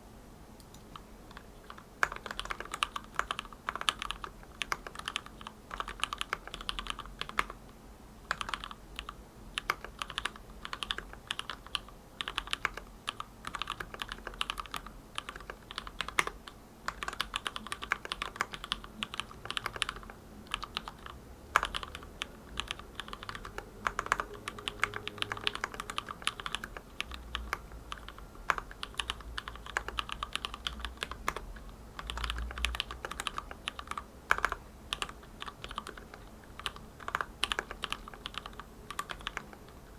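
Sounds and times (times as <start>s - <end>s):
mechanical keyboard keystroke clacks: 9.6s - 39.7s.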